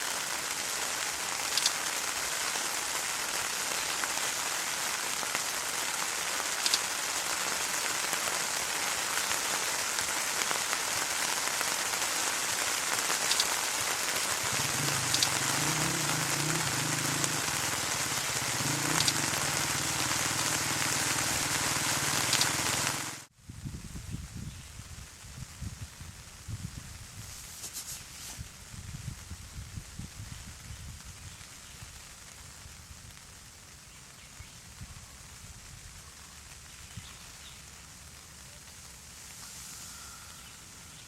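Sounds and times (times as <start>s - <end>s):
raindrops ticking close by: 0.0s - 23.3s
steady rain falling: 0.0s - 41.0s.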